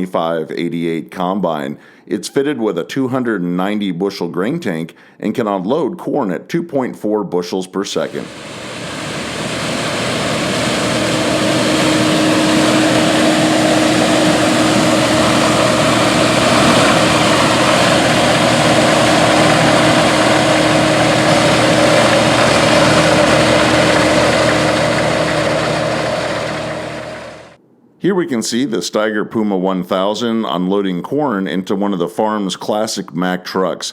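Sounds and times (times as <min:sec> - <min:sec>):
heavy diesel machinery running: 0:08.1 - 0:27.6.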